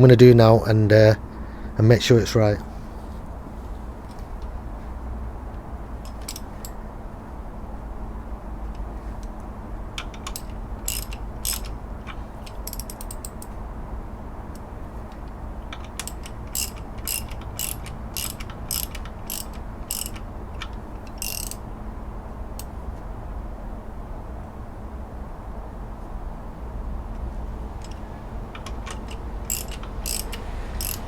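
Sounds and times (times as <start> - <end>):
ratchet wrench clicking: 6.0 - 6.8, 8.7 - 13.6, 14.5 - 21.7, 27.7 - 31.0.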